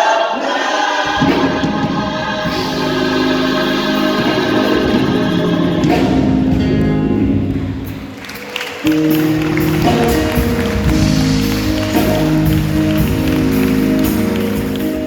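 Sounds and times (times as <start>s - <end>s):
gospel choir with band: 0.0s - 15.0s.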